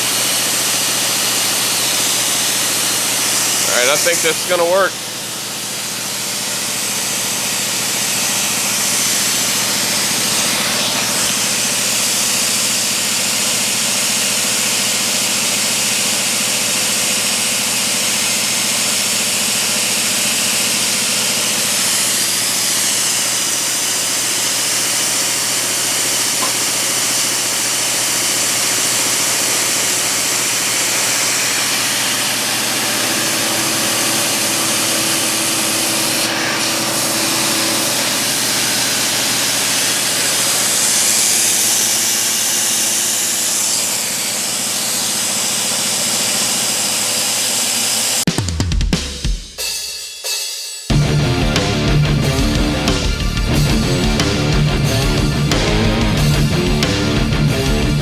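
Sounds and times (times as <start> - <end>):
compressed air hissing: 0.0 - 13.0, 21.5 - 48.2
milling machine cutting steel: 0.0 - 48.3.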